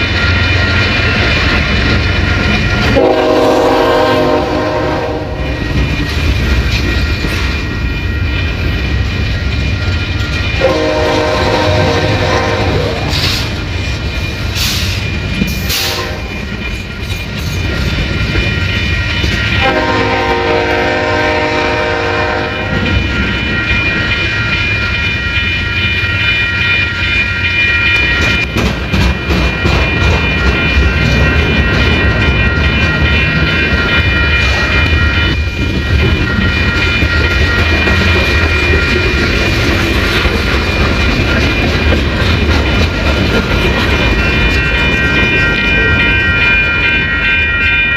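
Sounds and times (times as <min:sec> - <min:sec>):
freight train rumbling past: 0:00.0 - 0:47.9
locomotive air horn: 0:03.0 - 0:05.5, 0:10.6 - 0:13.2, 0:15.7 - 0:16.3, 0:19.6 - 0:22.8.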